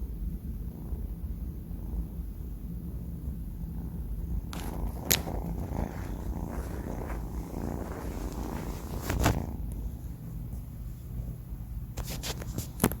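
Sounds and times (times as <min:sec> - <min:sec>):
kitten purring rumble: 0:00.0 - 0:13.0
clicks and rustles: 0:04.6 - 0:09.6.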